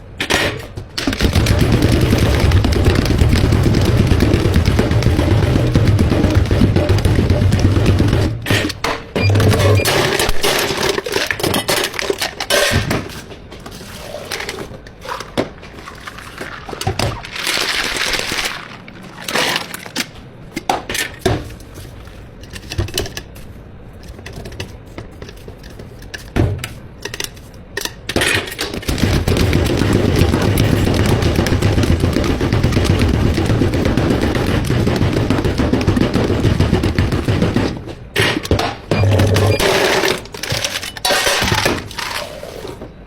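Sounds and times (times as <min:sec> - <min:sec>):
machine humming: 0:01.2 - 0:08.6, 0:09.2 - 0:10.3, 0:28.9 - 0:38.2, 0:38.9 - 0:40.7.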